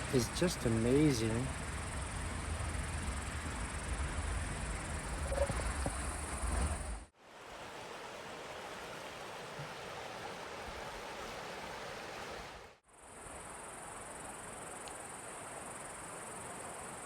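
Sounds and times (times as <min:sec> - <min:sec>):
mountain creek rushing: 0:00.0 - 0:12.8.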